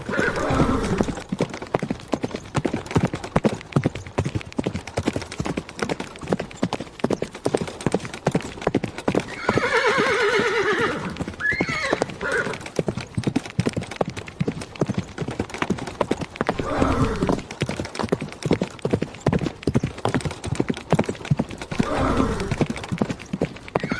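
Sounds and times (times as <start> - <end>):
horse whinnying: 0.0 - 1.2, 9.2 - 12.7, 16.5 - 17.5, 21.7 - 22.7
horse hoofbeats: 0.0 - 23.9.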